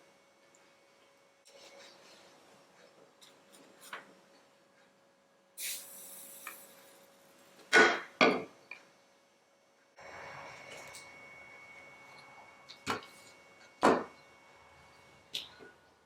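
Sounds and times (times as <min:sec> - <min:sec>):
steady hiss: 0:05.6 - 0:07.1.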